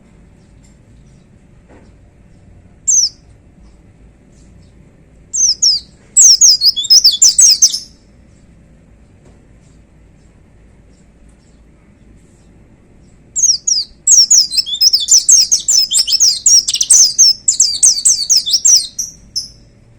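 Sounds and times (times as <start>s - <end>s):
bird singing high sliding notes: 5.4s - 7.9s, 13.4s - 19.6s.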